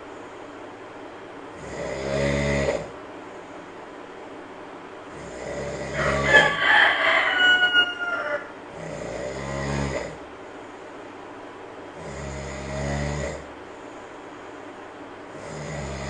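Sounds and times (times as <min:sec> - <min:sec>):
monkey snoring: 0:01.5 - 0:03.0, 0:05.1 - 0:06.5, 0:08.7 - 0:10.2, 0:12.0 - 0:13.5, 0:15.3 - 0:16.0.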